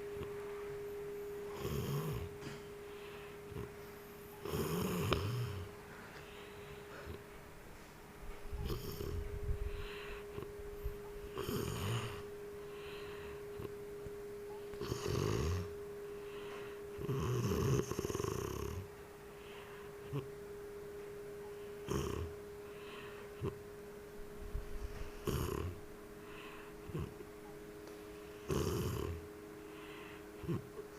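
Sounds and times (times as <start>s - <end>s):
faint steady hum: 0.0s - 30.9s
person snoring: 1.5s - 5.7s, 8.6s - 10.5s, 11.3s - 13.7s, 14.7s - 15.7s, 16.3s - 20.3s, 21.8s - 23.6s, 25.1s - 27.2s, 28.4s - 30.8s.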